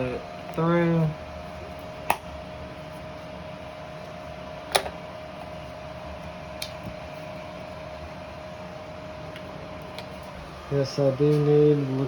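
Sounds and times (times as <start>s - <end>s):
steady electrical hum: 0.0s - 12.0s.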